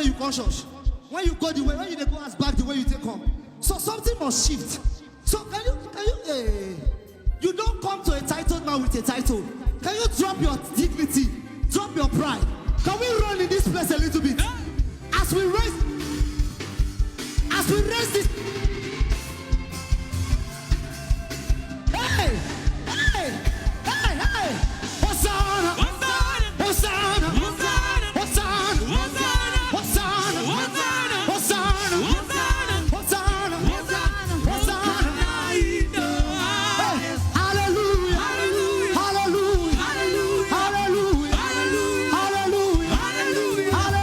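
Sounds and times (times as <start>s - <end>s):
gospel band playing: 0.0s - 44.0s
voices singing: 17.5s - 44.0s.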